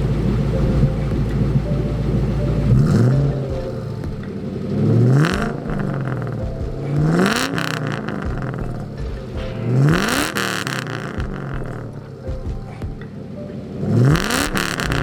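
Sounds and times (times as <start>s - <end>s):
car engine idling and revving: 0.0s - 15.0s.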